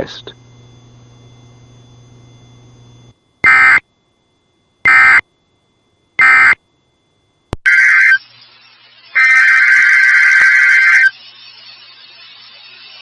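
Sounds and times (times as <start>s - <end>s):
digital data bursts: 3.4s - 3.8s, 4.9s - 5.2s, 6.2s - 6.6s, 7.6s - 13.0s.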